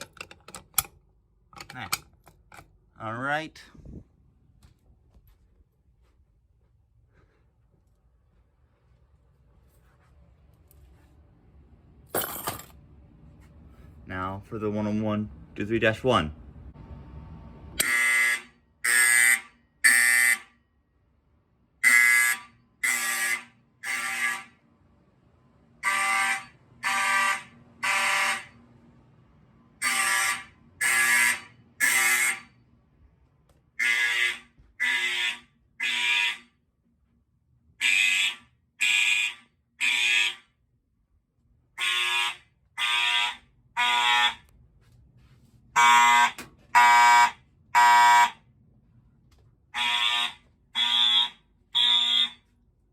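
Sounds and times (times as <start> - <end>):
fire alarm blasts: 17.8 - 20.6, 21.8 - 24.6, 25.8 - 28.6, 29.8 - 32.6, 33.8 - 36.6, 37.8 - 40.5, 41.8 - 44.5, 45.8 - 48.4, 49.7 - 52.5.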